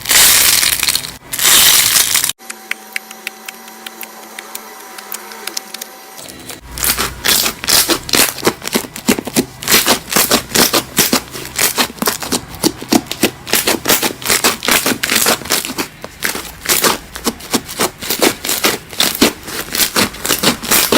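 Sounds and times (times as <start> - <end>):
slime squeezed by hand crackling: 6.7 - 20.9.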